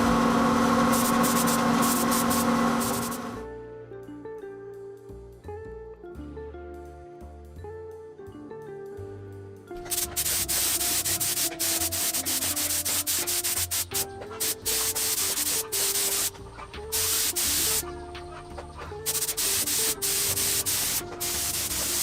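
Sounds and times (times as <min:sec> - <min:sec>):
aerosol spray can hissing: 0:00.9 - 0:03.3, 0:09.8 - 0:18.0, 0:18.9 - 0:22.0
background music: 0:02.4 - 0:22.0.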